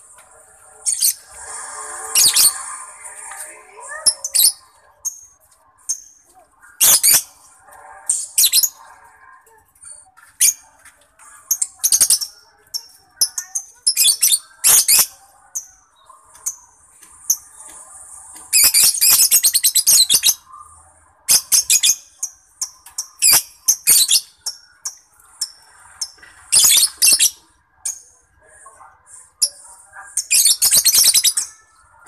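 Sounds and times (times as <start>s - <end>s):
lovebird chirping and trilling: 0.8s - 7.4s, 18.5s - 20.4s, 21.3s - 28.0s.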